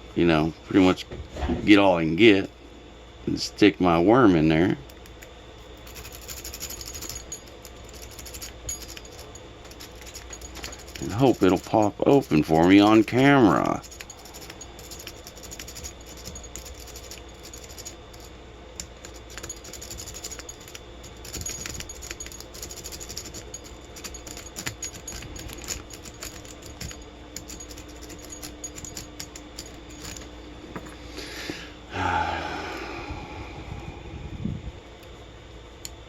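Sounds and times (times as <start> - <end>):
lock pick scraping and clicking: 4.9 - 30.3.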